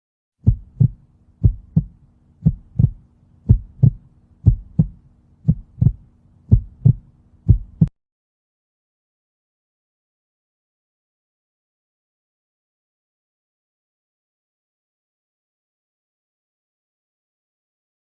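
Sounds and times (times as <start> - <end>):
faint low hum: 0.4 - 7.9
heartbeat: 0.4 - 7.9.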